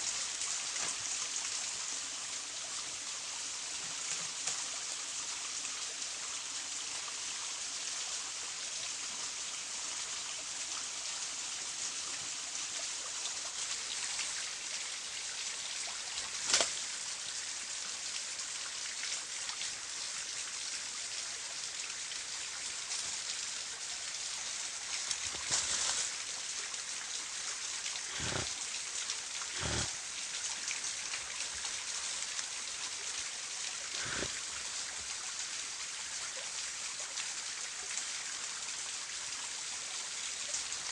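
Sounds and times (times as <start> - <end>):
running water hissing: 27.6 - 30.4, 33.6 - 35.1.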